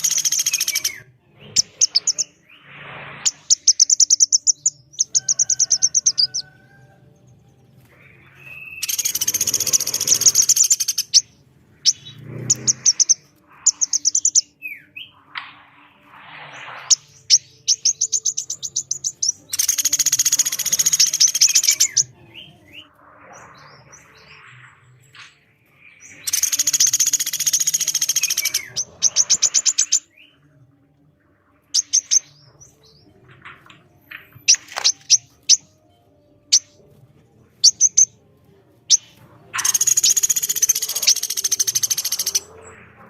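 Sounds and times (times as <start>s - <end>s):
woodpecker rattling calls: 0.0s - 0.9s, 8.8s - 14.4s, 17.8s - 22.0s, 26.3s - 30.0s, 39.6s - 42.4s
harsh bird calling: 0.0s - 6.6s, 8.0s - 15.8s, 16.6s - 22.9s, 26.2s - 30.4s, 38.9s - 42.6s.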